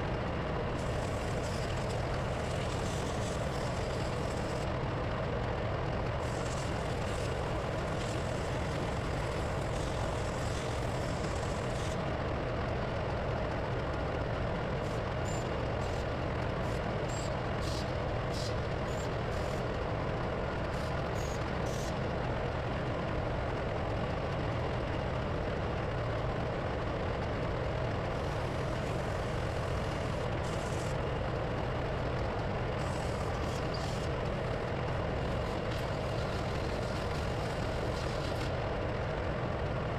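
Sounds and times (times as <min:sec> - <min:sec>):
diesel machinery droning: 0:00.0 - 0:39.9.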